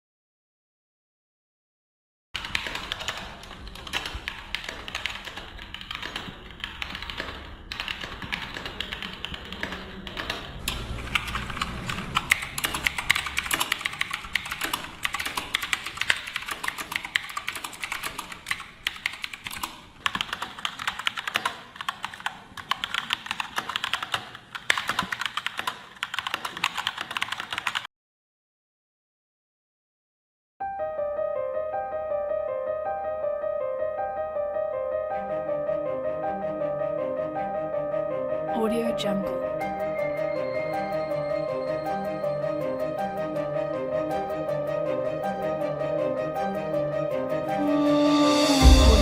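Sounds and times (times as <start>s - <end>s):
typing on mechanical keyboard: 2.4s - 27.9s.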